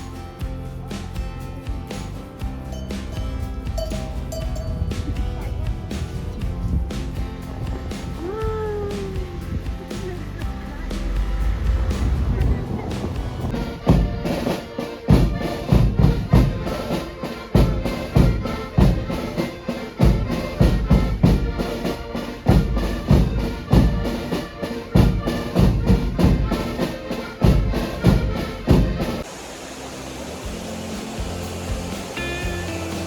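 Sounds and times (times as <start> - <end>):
music with steady beat: 0.0 - 29.3, 30.4 - 33.0
low rumble: 3.2 - 13.6.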